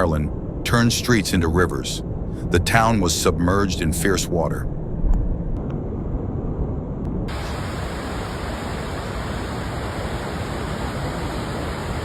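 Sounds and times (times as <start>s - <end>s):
floodwater rushing: 7.3s - 12.0s.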